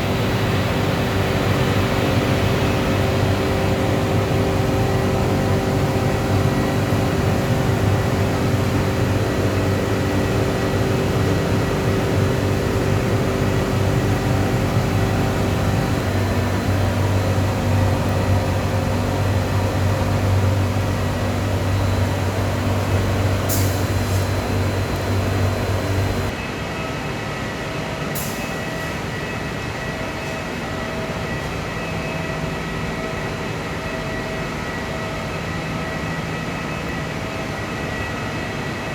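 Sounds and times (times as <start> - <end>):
furnace blower humming: 0.0 - 26.3.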